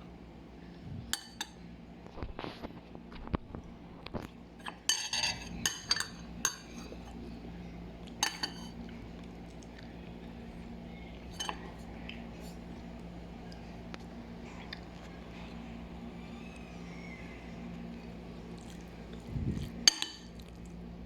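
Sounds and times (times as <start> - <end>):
metal utensils clinking on dishes: 1.2 - 1.6, 4.6 - 7.2, 8.2 - 8.8, 11.3 - 11.8, 19.8 - 20.3
low hum: 5.3 - 21.0.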